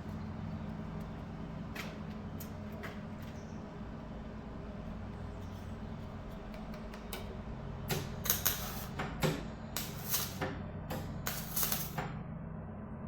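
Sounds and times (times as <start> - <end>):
steady low hum: 0.0 - 13.0
welding arc crackling bursts: 7.9 - 9.0, 9.8 - 10.4, 11.2 - 12.0.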